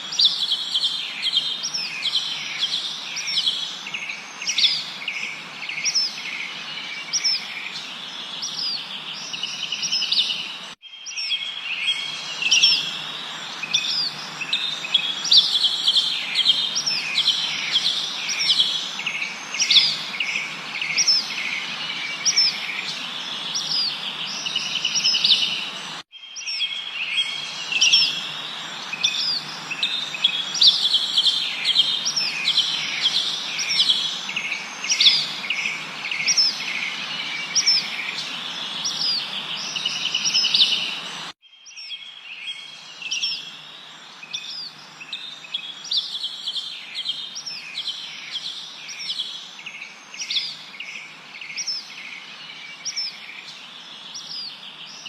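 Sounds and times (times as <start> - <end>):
steady background hiss: 0.0 - 10.8, 11.4 - 26.0, 26.8 - 41.4
songbirds chirping and whistling: 0.0 - 55.0.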